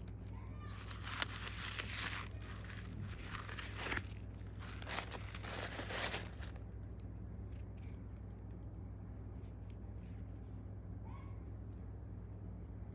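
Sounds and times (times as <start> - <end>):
packaging crinkling and rustling: 0.0 - 7.1.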